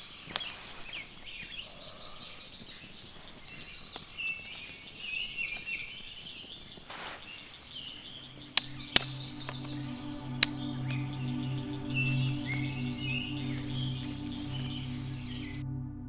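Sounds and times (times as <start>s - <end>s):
birds chirping and singing: 0.0s - 15.6s
background music low tone: 8.0s - 16.0s.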